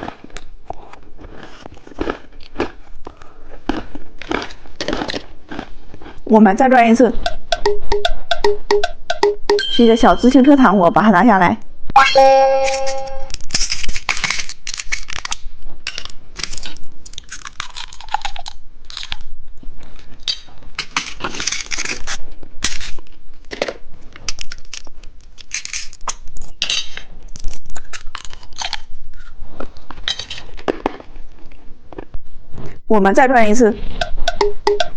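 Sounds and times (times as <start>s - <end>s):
plastic packaging crinkling: 12.6s - 19.2s.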